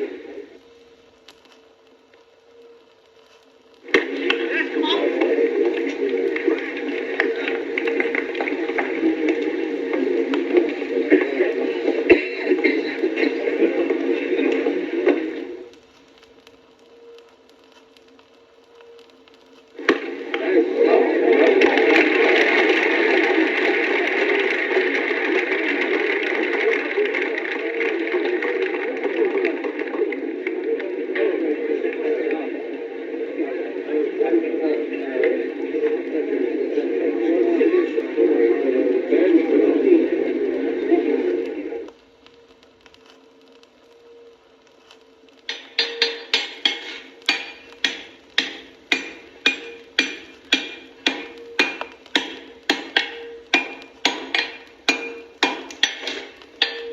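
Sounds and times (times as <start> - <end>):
murmur of many voices: 3.8 - 15.8, 19.8 - 42.0
hammer striking iron on anvil: 45.5 - 56.9.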